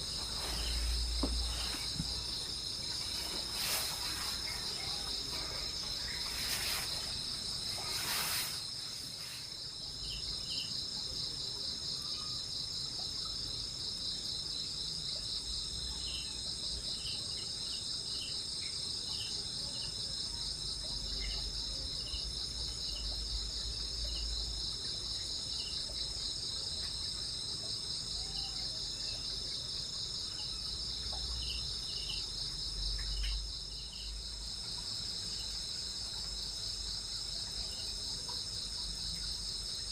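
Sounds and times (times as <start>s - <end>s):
rustling: 0.0s - 9.6s
crickets and insects trilling: 0.0s - 39.9s.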